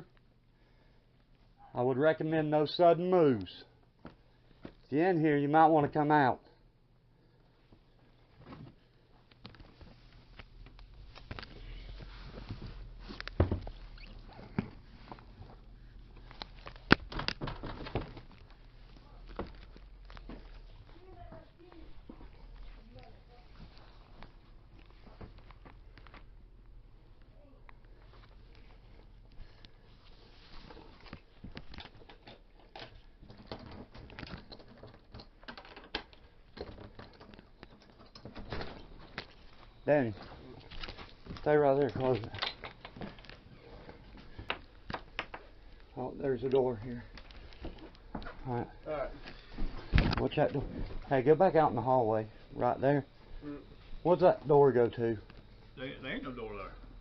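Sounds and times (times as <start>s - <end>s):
rustling: 7.9s - 34.5s.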